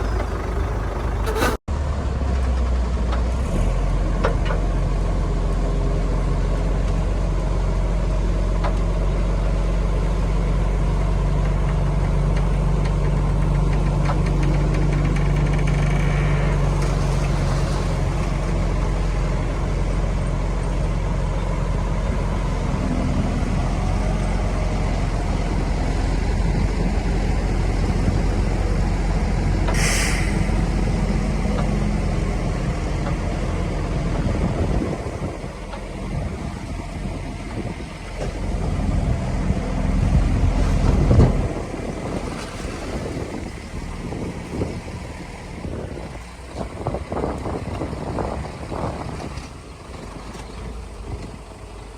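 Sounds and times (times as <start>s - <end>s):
diesel engine running: 0.0s - 51.9s
brief hiss: 29.7s - 30.6s.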